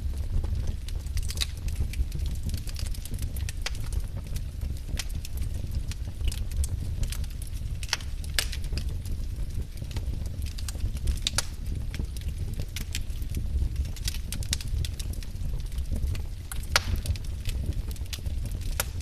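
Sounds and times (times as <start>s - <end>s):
firewood crackling: 0.0s - 19.0s.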